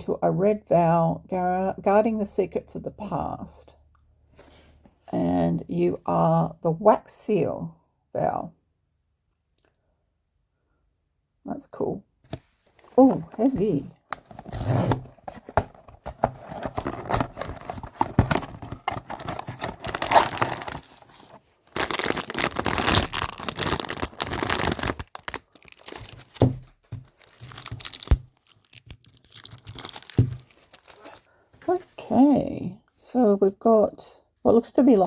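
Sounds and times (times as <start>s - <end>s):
cardboard and plastic wrapping tearing: 14.2s - 31.3s.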